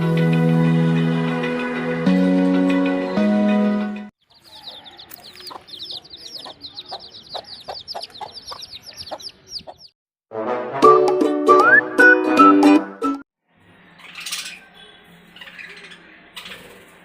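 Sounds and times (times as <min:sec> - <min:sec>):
birds chirping: 0:04.2 - 0:10.0, 0:13.6 - 0:17.0.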